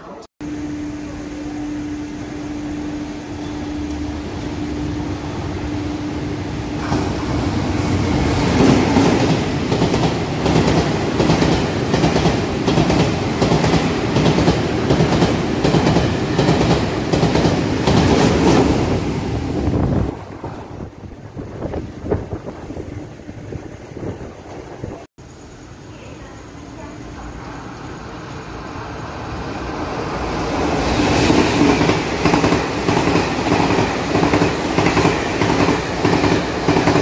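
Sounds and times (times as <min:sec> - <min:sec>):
train passing at speed: 0:00.4 - 0:37.0.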